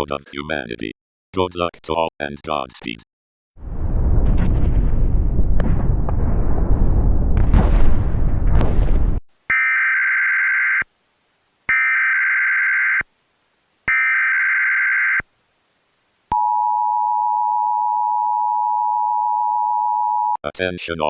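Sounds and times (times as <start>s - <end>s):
noisy blast: 3.6s - 9.2s.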